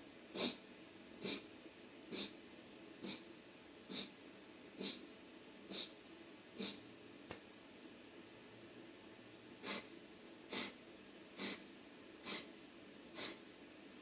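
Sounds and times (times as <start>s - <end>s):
forceful nasal exhalations: 11.4s - 11.6s, 12.2s - 12.5s, 13.2s - 13.4s.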